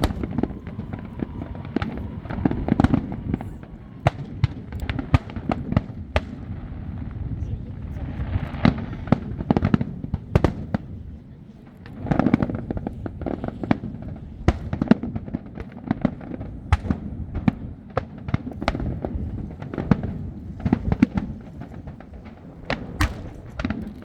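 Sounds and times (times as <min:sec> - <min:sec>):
low rumble of bursting shells: 0:00.0 - 0:11.0, 0:11.8 - 0:24.0
fireworks cracks and bangs: 0:00.0 - 0:24.0.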